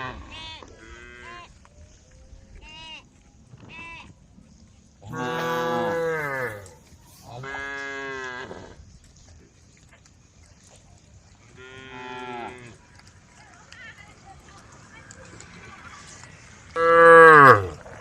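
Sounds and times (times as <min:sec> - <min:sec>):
cows mooing: 0:05.1 - 0:06.8, 0:16.8 - 0:18.0.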